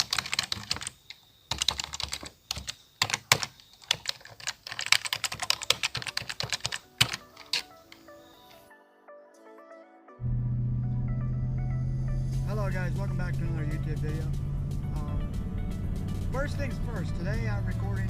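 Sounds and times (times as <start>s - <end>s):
rapid irregular clicking and tapping: 0.0s - 8.0s.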